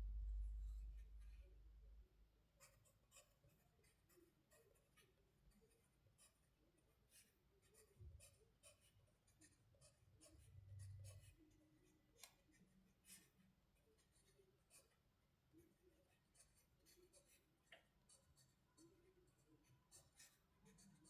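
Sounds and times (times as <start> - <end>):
soft low thuds: 0.0 - 2.0.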